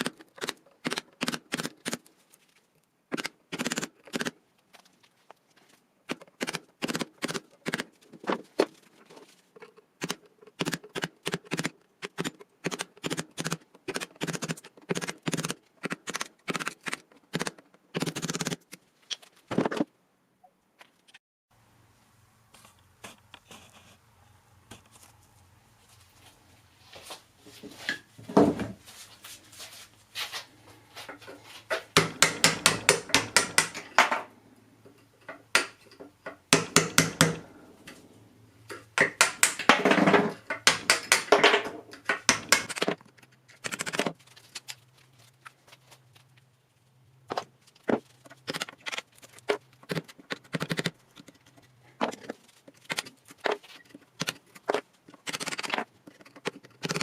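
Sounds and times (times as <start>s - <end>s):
hammer striking metal: 32.0s - 34.2s, 36.6s - 37.4s.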